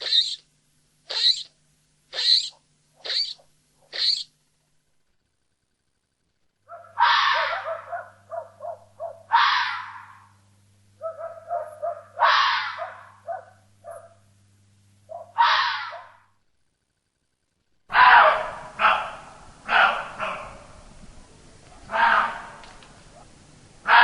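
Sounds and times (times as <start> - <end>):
animal screeching calls: 0.0 - 0.4, 1.1 - 1.5, 2.1 - 4.3, 12.2 - 12.9, 15.4 - 16.1
steady low hum: 0.0 - 15.4, 16.0 - 24.0.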